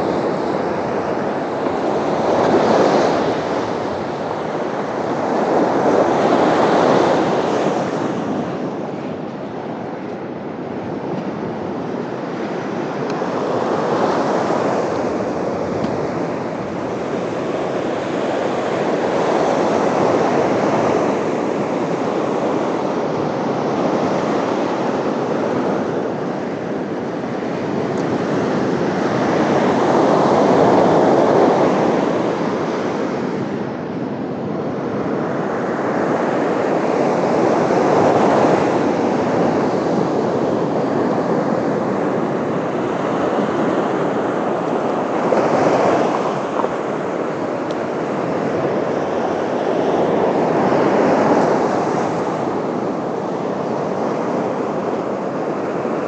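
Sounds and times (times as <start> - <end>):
waves breaking: 35.6 - 56.0.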